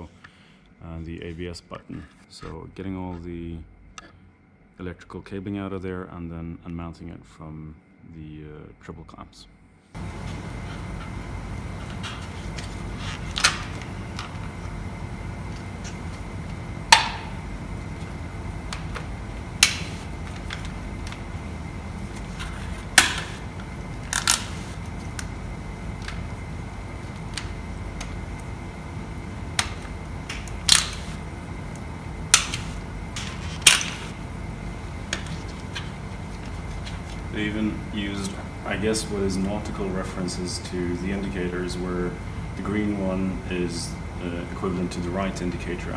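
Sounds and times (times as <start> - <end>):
low hum: 0.0 - 45.9
electrical connectors clicking: 15.5 - 21.3, 29.5 - 34.2.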